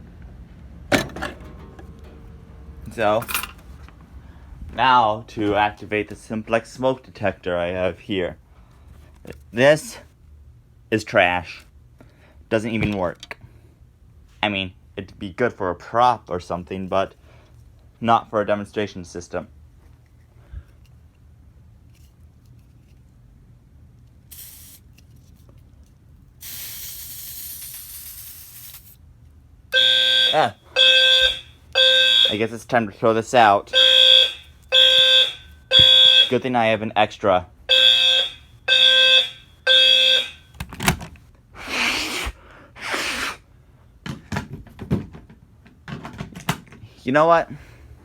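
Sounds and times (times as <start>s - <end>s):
aerosol spray hissing: 26.4s - 28.9s
fire alarm horn blast: 29.7s - 32.6s, 33.7s - 36.5s, 37.7s - 40.6s.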